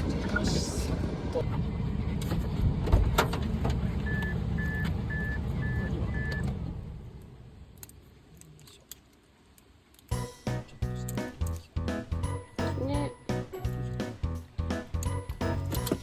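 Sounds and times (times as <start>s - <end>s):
music: 10.1s - 16.0s.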